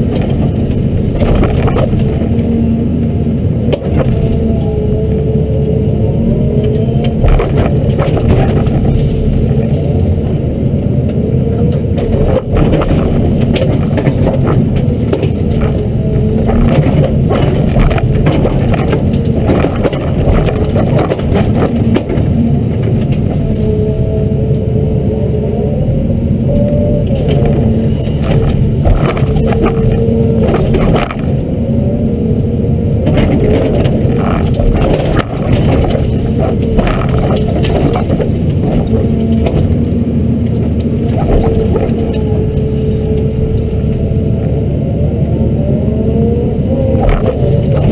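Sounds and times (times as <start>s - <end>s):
knocks and clatters: 0.0s - 2.6s, 6.7s - 10.4s, 11.1s - 23.9s, 27.1s - 31.4s, 33.0s - 43.7s, 47.0s - 47.9s
excavator diesel engine running: 0.0s - 47.9s.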